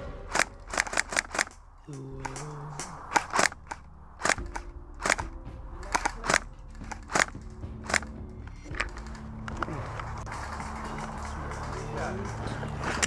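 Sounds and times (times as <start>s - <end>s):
airsoft gun shots: 0.3s - 1.6s, 3.1s - 8.1s.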